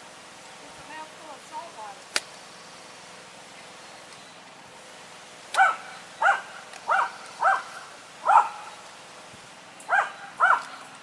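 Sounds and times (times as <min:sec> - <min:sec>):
dog barking: 0:05.6 - 0:08.7, 0:09.9 - 0:10.7.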